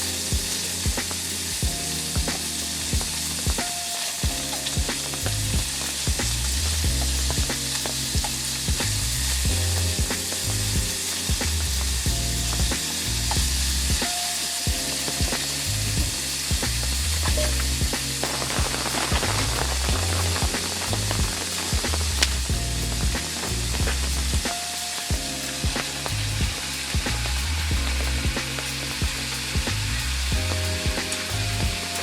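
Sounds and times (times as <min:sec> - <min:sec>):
background music with beat: 0:00.0 - 0:32.0
food sizzling in a frying pan: 0:00.1 - 0:06.0, 0:17.5 - 0:23.3.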